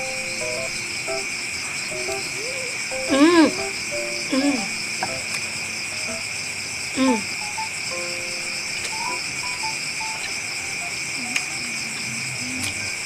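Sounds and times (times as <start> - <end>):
insects trilling: 0.0 - 13.0
soft background music: 1.9 - 5.2, 7.4 - 11.0
person humming: 2.2 - 4.8.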